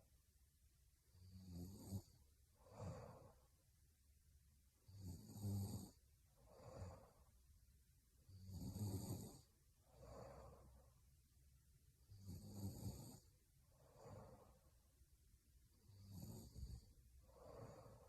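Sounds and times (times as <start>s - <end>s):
woman snoring: 1.2s - 3.4s, 4.9s - 7.2s, 8.3s - 10.8s, 12.1s - 14.6s, 15.8s - 18.0s.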